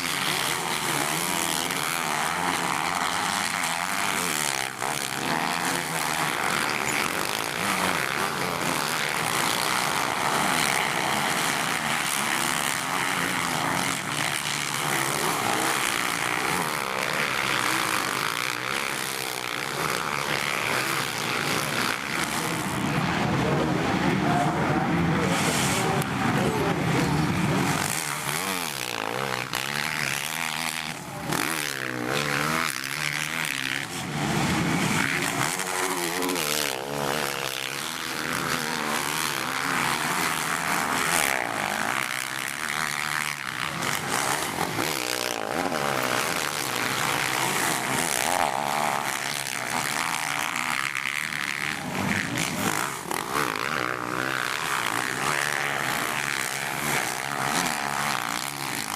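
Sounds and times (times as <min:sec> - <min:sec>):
motocross bike engines revving: 0:00.0 - 0:58.9.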